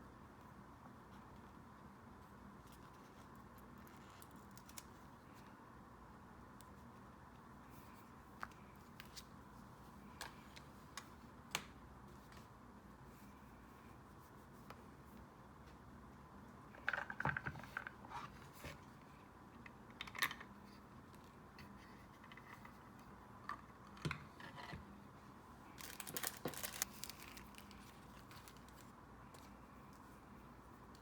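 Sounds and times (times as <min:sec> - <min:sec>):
faint steady hum: 0:00.0 - 0:31.0
paper rustling and small taps: 0:25.8 - 0:29.5.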